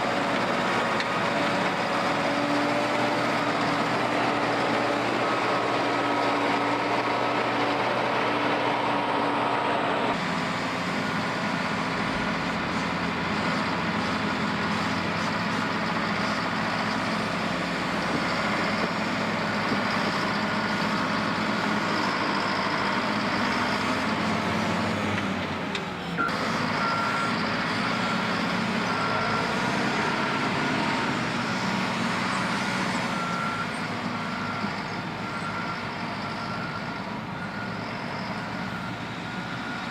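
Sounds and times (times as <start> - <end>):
diesel machinery engine: 0.0 - 39.9
reversing alarm beeping: 26.1 - 39.9.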